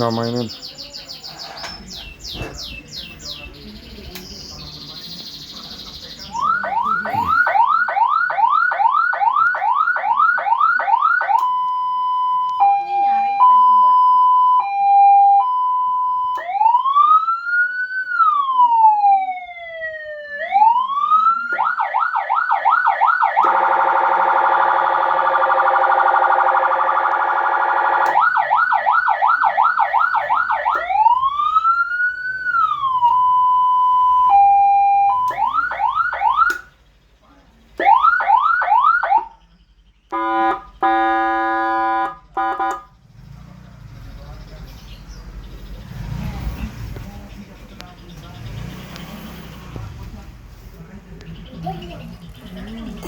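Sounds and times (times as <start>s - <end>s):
electronic siren cycling tones: 6.4s - 36.7s
harsh buzzing horn tone: 40.1s - 43.0s.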